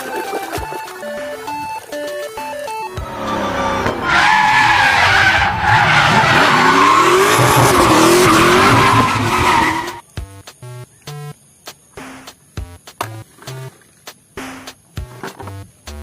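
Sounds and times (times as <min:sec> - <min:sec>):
car engine noise: 0:02.9 - 0:10.0
tyres squealing: 0:03.0 - 0:10.0.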